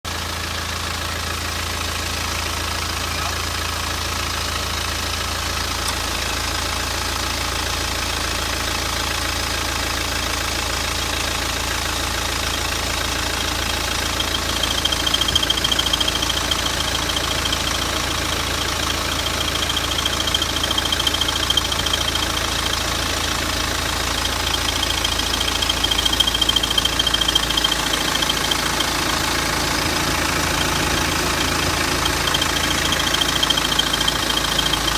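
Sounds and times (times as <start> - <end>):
diesel engine idling: 0.1 - 34.9
high-pitched squeal: 14.1 - 34.9.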